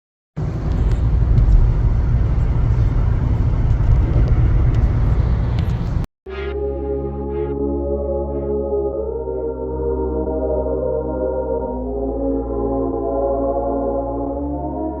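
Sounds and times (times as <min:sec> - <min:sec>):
car engine rumbling: 0:00.4 - 0:06.1
ambient music with gong tones: 0:06.3 - 0:15.0.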